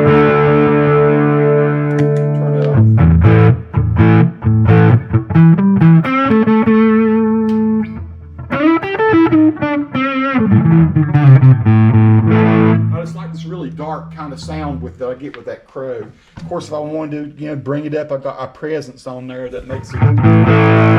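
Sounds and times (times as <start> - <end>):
overdriven electric guitar: 0.0 - 14.4, 19.8 - 20.9.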